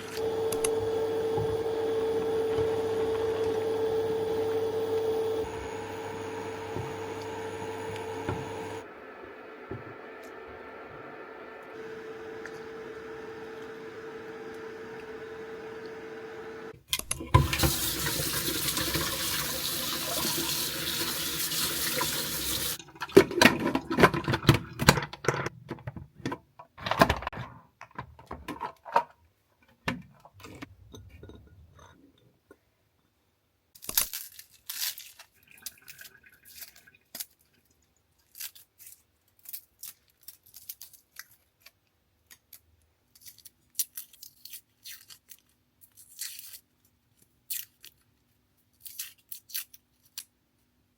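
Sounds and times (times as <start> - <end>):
tap water running into sink: 0.1 - 8.9, 17.0 - 25.0.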